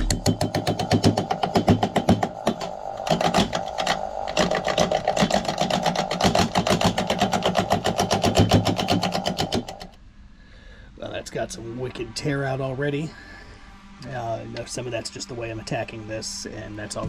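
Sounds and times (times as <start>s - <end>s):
gouge knocking on wood: 0.0s - 3.5s
wood lathe whine: 0.0s - 10.0s.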